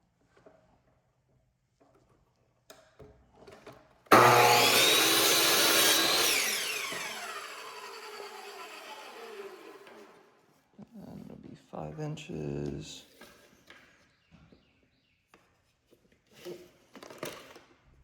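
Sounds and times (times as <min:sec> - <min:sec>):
saw blade spinning down whine: 0:04.1 - 0:10.1
miter saw cutting wood: 0:04.1 - 0:10.3.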